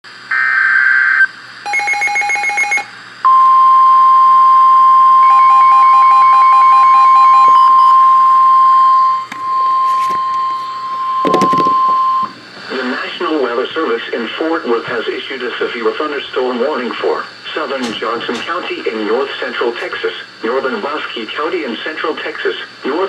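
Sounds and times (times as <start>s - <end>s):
steady warning alarm tone: 0.3s - 12.4s.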